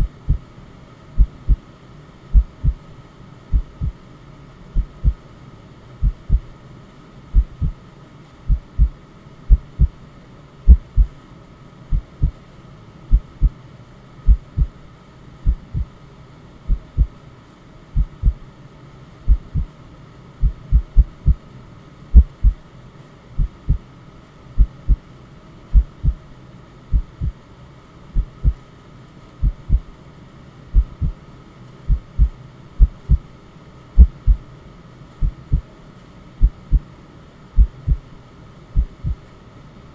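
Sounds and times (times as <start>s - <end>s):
heartbeat double thumps: 0.0s - 0.4s, 1.2s - 1.6s, 2.3s - 2.8s, 3.5s - 4.0s, 4.8s - 5.2s, 6.0s - 6.5s, 7.4s - 7.8s, 8.5s - 9.9s, 10.7s - 11.1s, 11.9s - 12.4s, 13.1s - 13.5s, 14.3s - 14.7s, 15.4s - 15.9s, 16.7s - 17.1s, 18.0s - 18.4s, 19.3s - 19.7s, 20.4s - 21.4s, 22.2s - 22.6s, 23.4s - 23.8s, 24.6s - 25.0s, 25.8s - 26.2s, 26.9s - 27.4s, 28.2s - 28.6s, 29.4s - 29.9s, 30.8s - 31.2s, 31.9s - 33.2s, 34.0s - 34.4s, 35.2s - 35.7s, 36.4s - 36.8s, 37.6s - 38.0s, 38.8s - 39.2s
faint white-noise hum: 0.0s - 39.9s.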